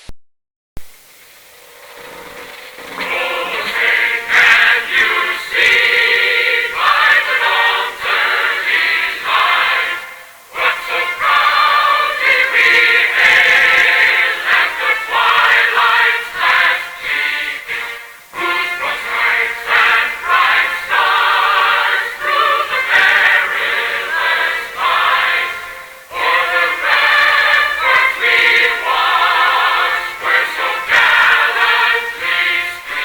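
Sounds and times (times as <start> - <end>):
choir singing an anthem: 2.4 - 33.0.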